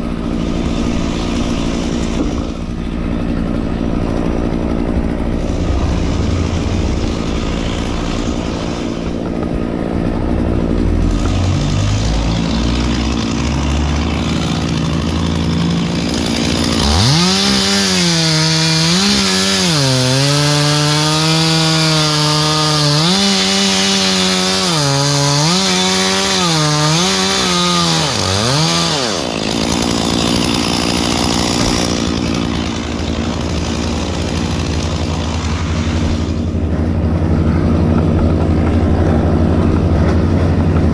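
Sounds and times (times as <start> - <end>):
low engine rumble: 0.0 - 17.2, 29.2 - 40.9
chainsaw cutting wood: 0.0 - 40.9.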